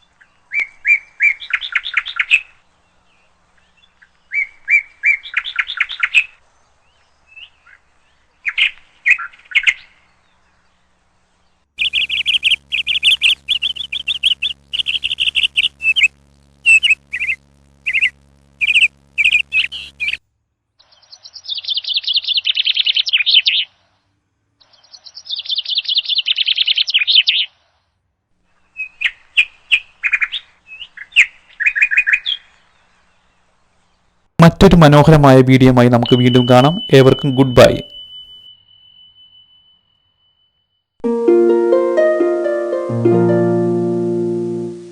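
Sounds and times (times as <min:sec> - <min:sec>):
sparrows chirping: 0:00.0 - 0:16.1, 0:20.8 - 0:24.0, 0:24.6 - 0:27.8, 0:28.5 - 0:40.7
rapid chattering bird notes: 0:11.8 - 0:20.2, 0:34.4 - 0:38.3.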